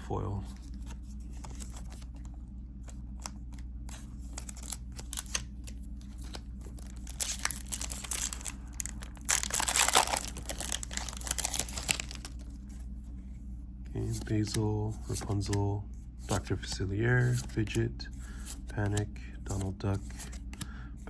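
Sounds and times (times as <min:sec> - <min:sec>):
plastic wrapper crinkling and tearing: 0:04.3 - 0:12.6.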